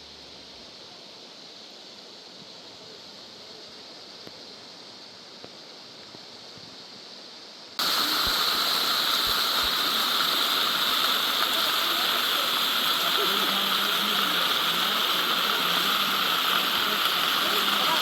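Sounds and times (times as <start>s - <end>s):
quiet outdoor hiss: 0.0s - 18.0s
waterfall rushing: 7.8s - 18.0s.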